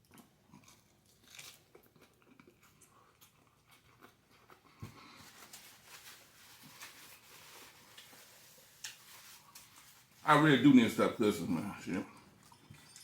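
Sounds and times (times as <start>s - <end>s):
chewing fried food: 0.0s - 5.3s.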